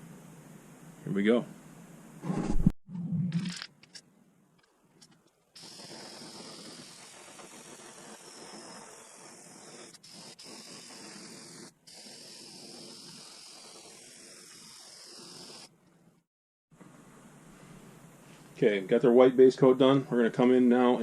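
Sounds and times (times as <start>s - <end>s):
airbrush spraying hiss: 5.5s - 15.8s.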